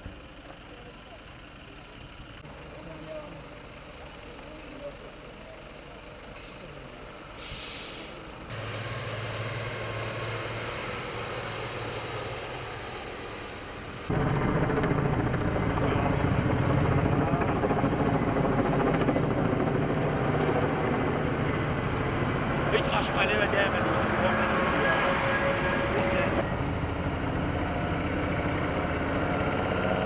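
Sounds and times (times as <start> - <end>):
heavy vehicle engine running: 0.0 - 30.0
air hiss: 7.4 - 8.2.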